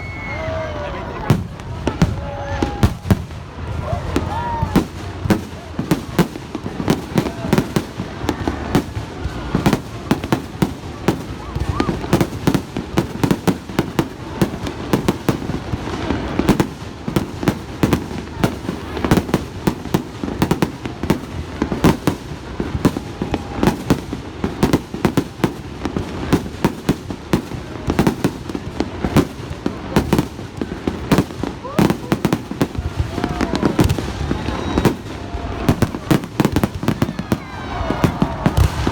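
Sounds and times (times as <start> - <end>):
fireworks bangs: 0.0 - 38.9.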